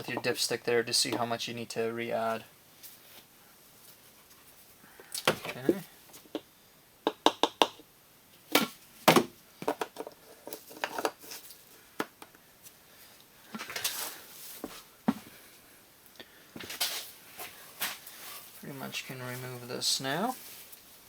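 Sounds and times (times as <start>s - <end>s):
objects being handled: 8.5s - 15.4s
rustling scrape: 13.6s - 14.9s, 16.6s - 21.0s.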